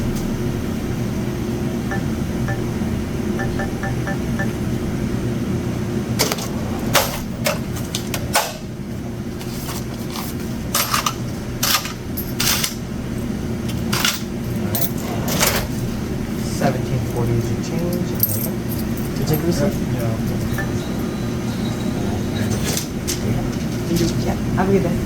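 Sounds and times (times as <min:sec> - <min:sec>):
steady low hum: 0:00.0 - 0:09.4, 0:18.3 - 0:22.4
cash register key beeps: 0:03.4 - 0:04.5, 0:20.4 - 0:22.6.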